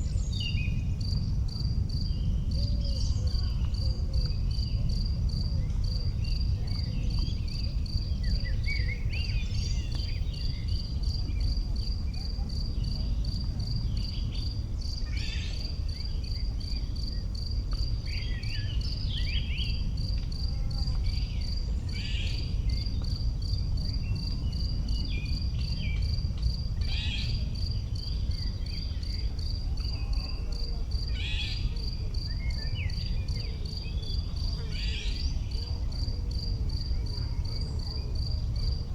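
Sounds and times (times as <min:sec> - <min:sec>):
steady low rumble: 0:00.0 - 0:15.1
cricket chirping: 0:00.0 - 0:38.9.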